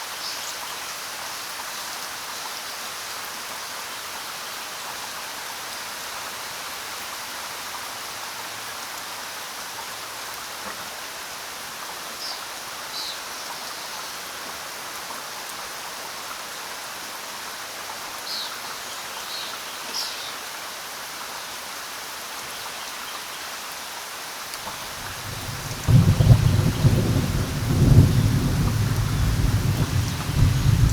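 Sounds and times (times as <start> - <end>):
steady rain falling: 0.0 - 30.9.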